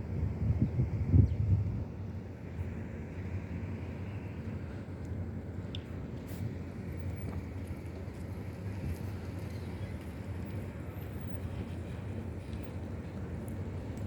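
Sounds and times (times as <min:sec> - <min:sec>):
wind buffeting microphone: 0:00.0 - 0:02.1.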